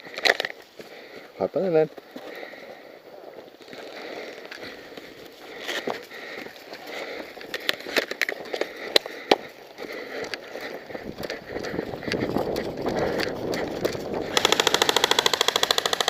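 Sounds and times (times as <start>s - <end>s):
rustling through brush: 2.0s - 16.0s
airsoft gun automatic fire: 14.3s - 16.0s.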